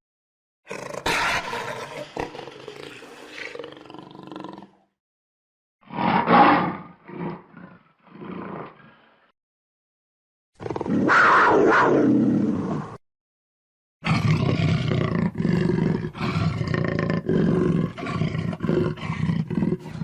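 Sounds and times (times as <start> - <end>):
leopard roaring: 0.7 - 4.8, 5.8 - 9.3, 10.6 - 13.0, 14.0 - 20.0.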